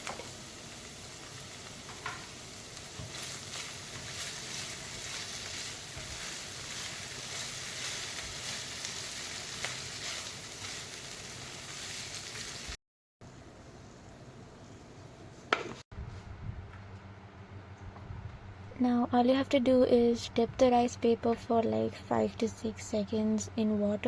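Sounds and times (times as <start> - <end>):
vegetables sizzling in a pan: 0.0 - 12.8.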